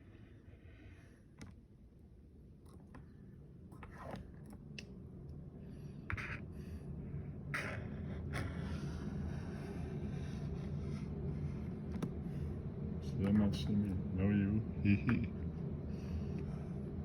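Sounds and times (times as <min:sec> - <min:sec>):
low rumble: 0:05.5 - 0:17.0.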